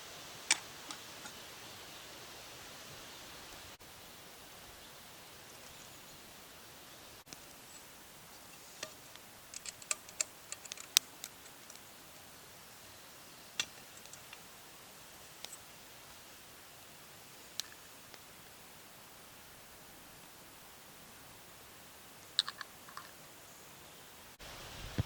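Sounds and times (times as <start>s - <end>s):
faint fire hiss: 0.0s - 25.0s
wood fire crackling and popping: 8.8s - 11.8s.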